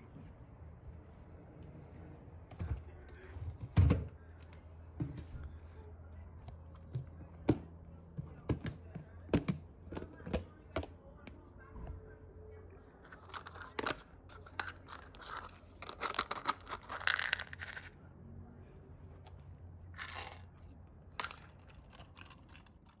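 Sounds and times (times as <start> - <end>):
dog crunching food: 14.8 - 17.9.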